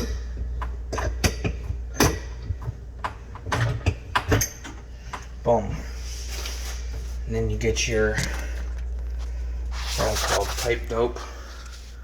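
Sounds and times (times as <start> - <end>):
metal clicks and knocks: 0.0 - 5.3
steady low hum: 0.0 - 12.0.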